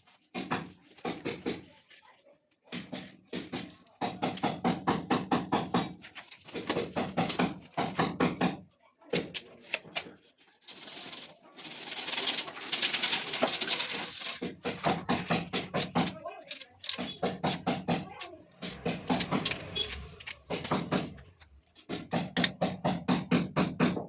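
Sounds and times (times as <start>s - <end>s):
harsh rasping plumbing work: 9.2s - 24.0s.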